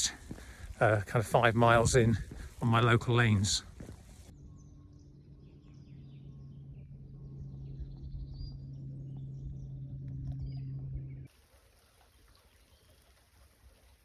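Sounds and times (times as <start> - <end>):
small birds chirping: 0.0 - 4.3.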